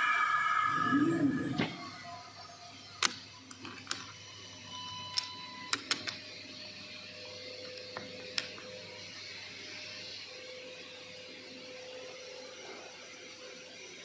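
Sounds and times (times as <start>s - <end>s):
cnc router hiss and whine: 0.0s - 14.0s
sharp clicks: 5.2s - 6.2s.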